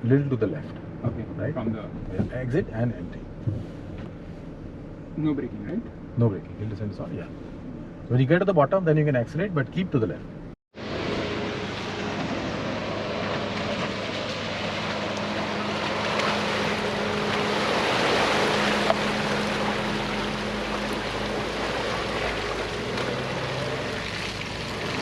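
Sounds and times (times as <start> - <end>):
engine running at low speed: 0.0 - 25.0
rough rushing noise: 10.8 - 25.0.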